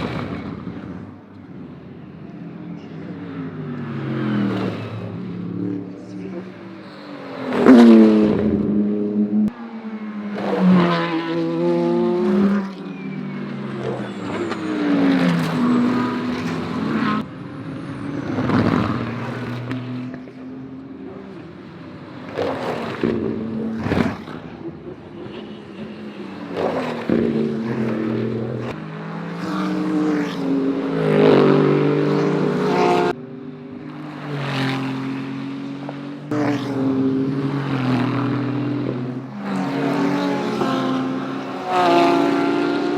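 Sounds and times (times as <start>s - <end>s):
race cars passing at speed: 0.0s - 42.9s.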